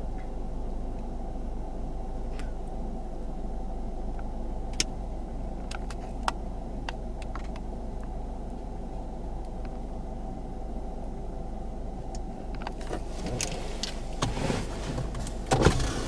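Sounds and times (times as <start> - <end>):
car engine and road noise: 12.2 - 16.0.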